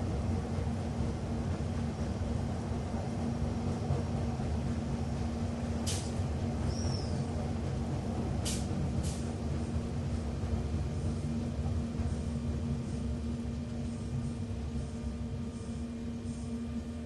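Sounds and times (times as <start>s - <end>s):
train rumble: 0.0s - 17.0s.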